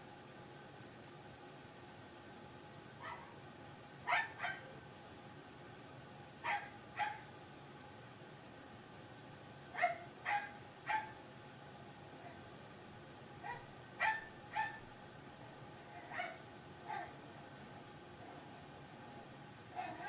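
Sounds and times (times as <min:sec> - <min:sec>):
puppy yapping: 0:03.0 - 0:03.4, 0:04.1 - 0:04.8, 0:06.4 - 0:07.2, 0:09.8 - 0:11.2, 0:13.4 - 0:14.9, 0:16.0 - 0:17.2, 0:19.7 - 0:20.0.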